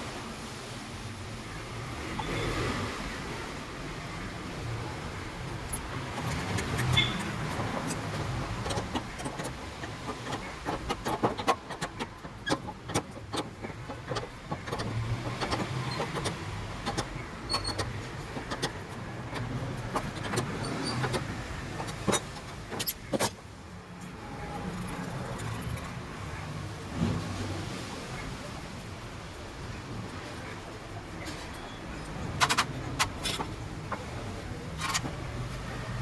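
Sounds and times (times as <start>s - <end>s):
clicks and taps on metal parts: 5.4s - 23.4s, 25.0s - 36.0s.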